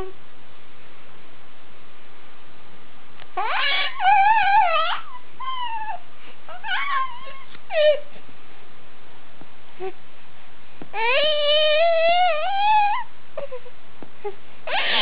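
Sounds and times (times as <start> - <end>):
rubber squeaky toy squeaking: 3.4 - 8.0, 11.0 - 13.6, 14.7 - 15.0.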